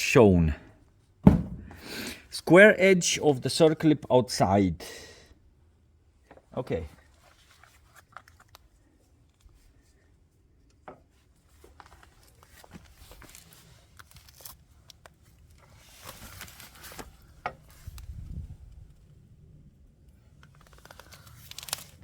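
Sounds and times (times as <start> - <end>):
rustling scraping handling noise: 15.5 - 18.2.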